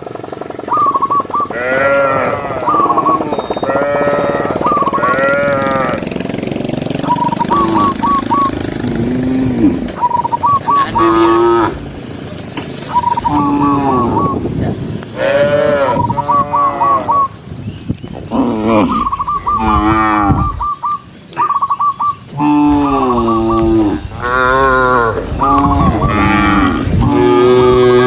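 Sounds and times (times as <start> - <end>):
cattle mooing: 1.5 - 6.4, 7.0 - 10.0, 10.6 - 12.0, 13.2 - 14.4, 15.2 - 17.3, 18.3 - 20.7, 22.3 - 28.0.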